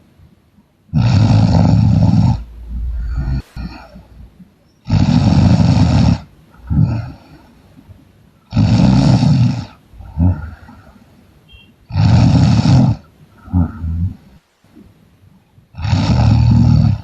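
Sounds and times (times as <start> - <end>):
soft breath sound: 1.6 - 8.0, 9.8 - 11.3
woman snoring loudly: 8.5 - 10.4, 11.9 - 14.1, 15.8 - 17.0.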